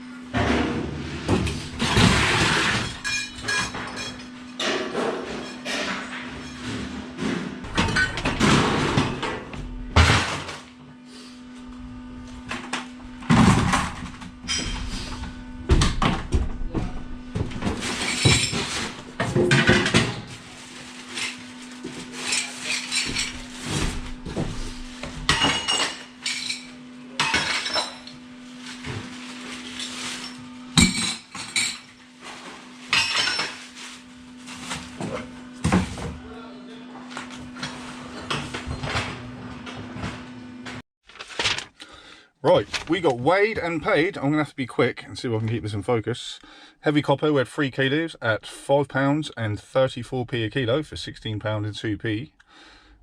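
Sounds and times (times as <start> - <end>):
scrap metal clanking and crashing: 17.6 - 23.9.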